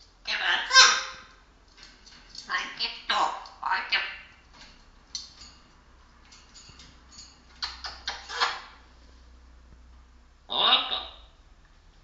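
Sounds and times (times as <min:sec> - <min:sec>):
parrot clicking and calling: 0:00.2 - 0:01.4, 0:02.3 - 0:04.4, 0:07.5 - 0:08.8.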